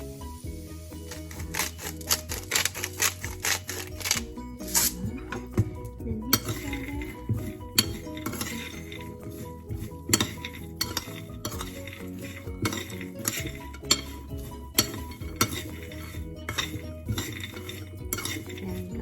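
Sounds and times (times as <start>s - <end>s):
background music: 0.0s - 19.0s
spoon stirring peanuts: 0.9s - 19.0s
spoon clinking against bowl: 6.3s - 18.9s.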